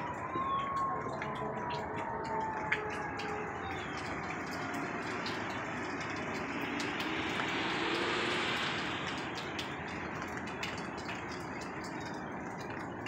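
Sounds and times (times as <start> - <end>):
rushing roar in the sky: 0.0 - 13.0.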